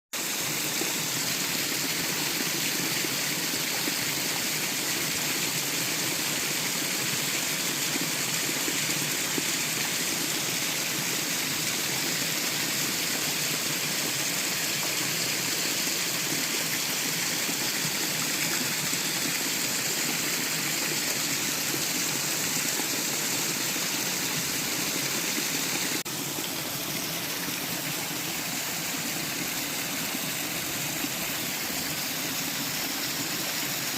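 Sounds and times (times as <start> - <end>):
waterfall rushing: 15.2 - 33.5.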